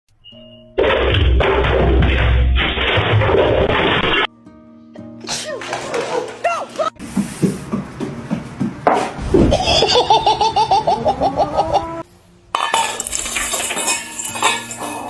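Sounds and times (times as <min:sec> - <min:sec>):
person laughing: 0:09.3 - 0:12.0
household sounds: 0:12.6 - 0:15.0.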